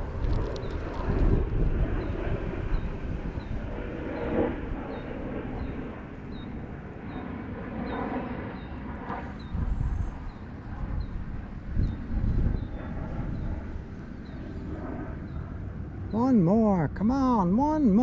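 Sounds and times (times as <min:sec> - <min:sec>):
low outdoor rumble: 0:00.0 - 0:18.0.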